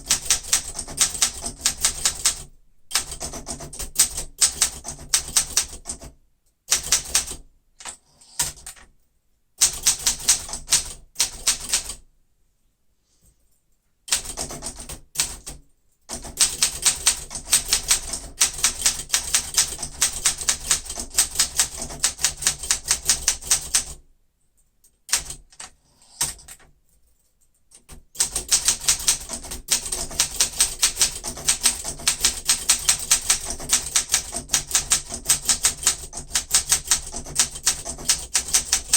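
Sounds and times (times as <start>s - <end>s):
manual typewriter typing: 0.0s - 6.1s, 6.7s - 8.9s, 9.6s - 12.0s, 14.1s - 24.0s, 25.1s - 26.8s, 27.7s - 38.9s.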